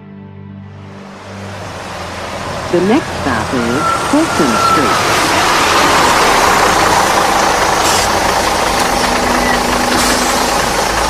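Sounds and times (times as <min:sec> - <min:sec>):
subway train rumble and hiss: 0:01.1 - 0:11.0
train rattles: 0:01.4 - 0:11.0.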